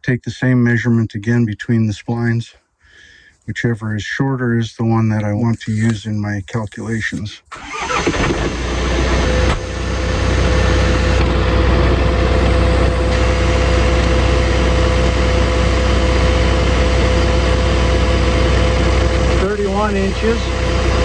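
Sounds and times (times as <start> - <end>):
tractor engine idling: 7.5 - 21.0.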